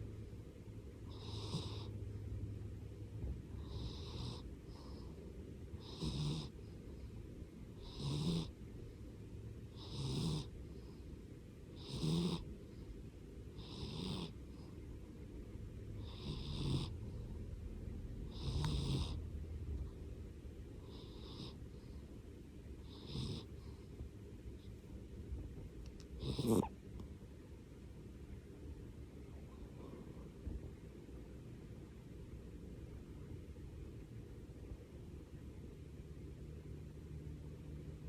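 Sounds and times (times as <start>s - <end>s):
cat snoring: 1.1s - 2.0s, 3.6s - 5.0s, 5.8s - 6.6s, 7.8s - 8.6s, 9.7s - 10.6s, 11.8s - 12.5s, 13.6s - 14.4s, 16.0s - 17.2s, 18.2s - 19.3s, 20.8s - 21.6s, 22.8s - 23.7s, 26.2s - 26.7s.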